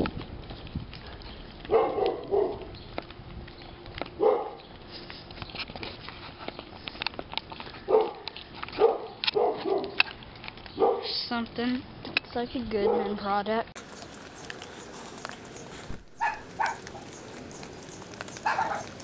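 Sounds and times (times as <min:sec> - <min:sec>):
dog barking: 0:01.7 - 0:02.7, 0:04.2 - 0:04.6, 0:07.9 - 0:10.0, 0:10.8 - 0:11.2, 0:12.8 - 0:13.2, 0:16.2 - 0:17.1, 0:18.4 - 0:19.0.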